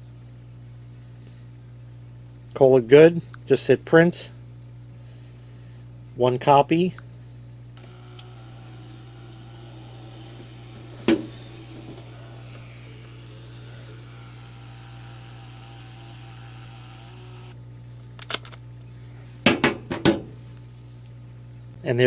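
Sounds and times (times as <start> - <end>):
label printer motor whirring: 7.8 - 17.6.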